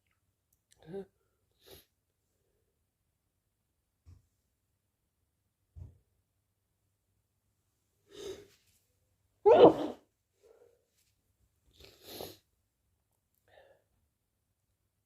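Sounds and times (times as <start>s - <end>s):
person sneezing: 9.5s - 10.0s
breath: 11.7s - 12.5s, 13.5s - 14.0s.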